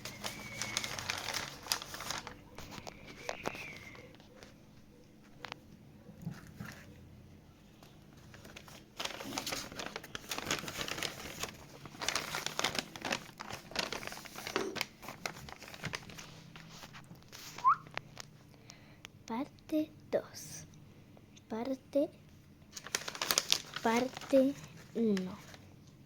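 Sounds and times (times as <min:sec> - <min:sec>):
plastic crinkling: 0:00.0 - 0:04.6, 0:07.8 - 0:18.4, 0:22.7 - 0:25.7.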